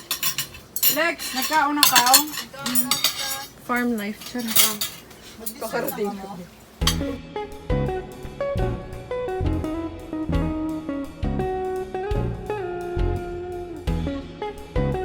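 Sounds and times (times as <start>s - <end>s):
plucked guitar tune: 6.9s - 15.0s
bass line: 7.1s - 15.0s.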